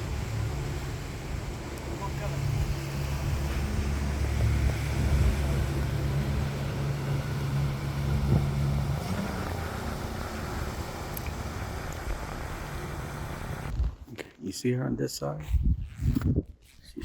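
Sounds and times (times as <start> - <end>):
motor engine humming: 0.0 - 13.7.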